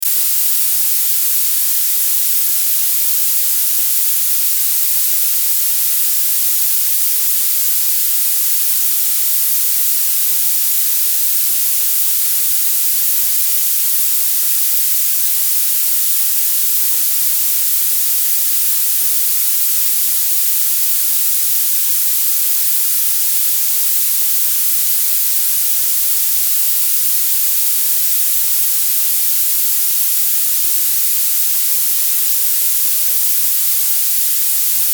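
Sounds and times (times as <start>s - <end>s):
bright synthetic hiss: 0.0s - 34.9s.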